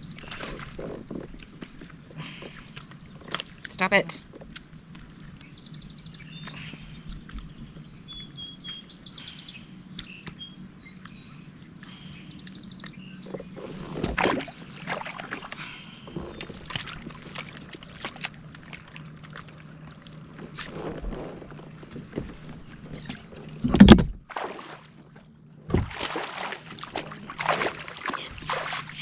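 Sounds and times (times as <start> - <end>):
small water splashes: 0.0 - 5.5, 13.7 - 29.0
birds chirping: 0.0 - 23.6, 26.3 - 29.0
steady low hum: 0.0 - 29.0
knocks on kayak: 23.6 - 24.2, 25.7 - 26.2.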